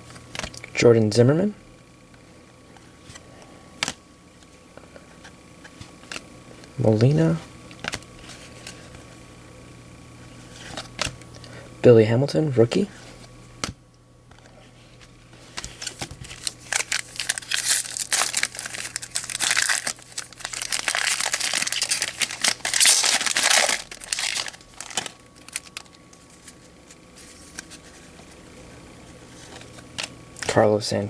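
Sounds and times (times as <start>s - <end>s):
foil wrapper tearing and crinkling: 15.4s - 27.8s.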